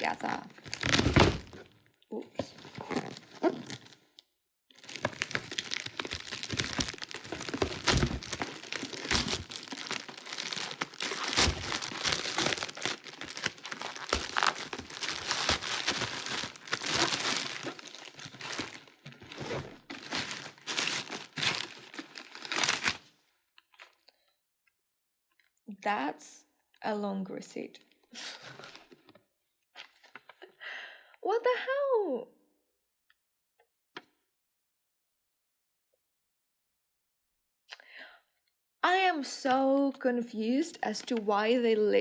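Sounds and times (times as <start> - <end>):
wrapping crinkling and tearing: 0.0 - 1.6, 2.4 - 4.1, 4.8 - 23.1.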